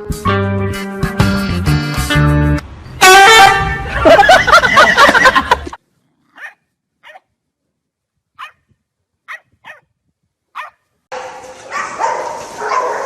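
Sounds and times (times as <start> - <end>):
dog barking and yelping: 6.3 - 7.3, 8.4 - 8.6, 9.3 - 9.9, 10.5 - 13.0.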